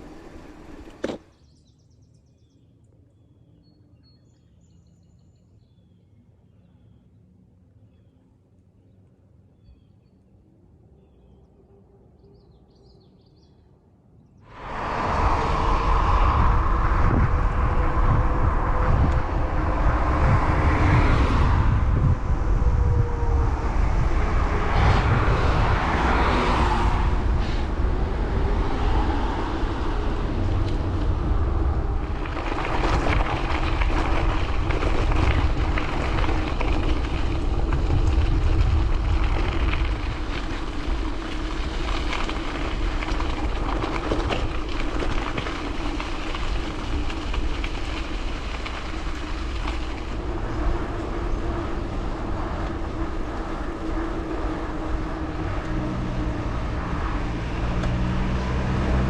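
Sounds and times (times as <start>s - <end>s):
tyres rumbling on gravel: 0.0s - 1.3s, 14.5s - 59.0s
wind rushing on microphone: 14.5s - 59.0s.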